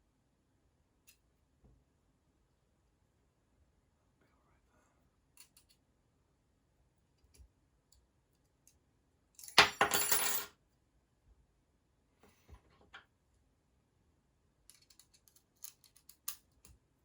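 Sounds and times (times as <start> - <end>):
parts clicking when handled: 14.7 - 16.7.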